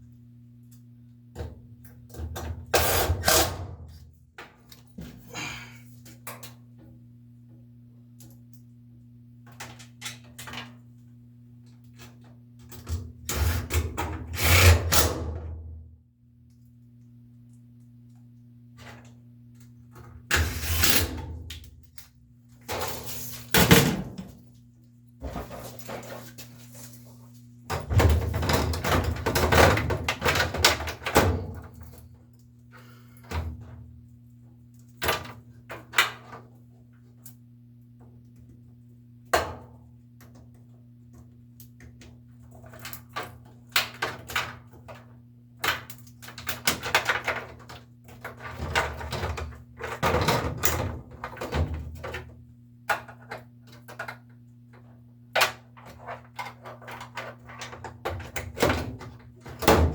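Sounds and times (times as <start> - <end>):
low electrical hum: 0.0 - 59.9.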